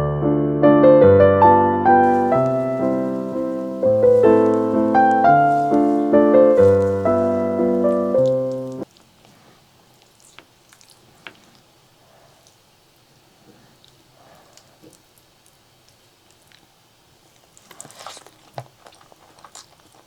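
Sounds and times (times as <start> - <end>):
piano music: 1.5 - 8.8.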